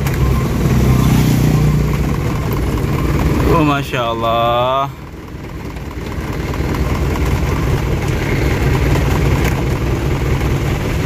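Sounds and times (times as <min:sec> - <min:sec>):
vehicle engine idling: 0:00.0 - 0:11.0.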